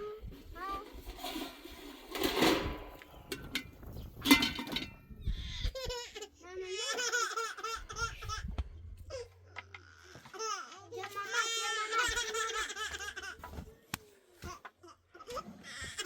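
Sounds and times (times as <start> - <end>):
young child laughing: 5.6 - 9.3.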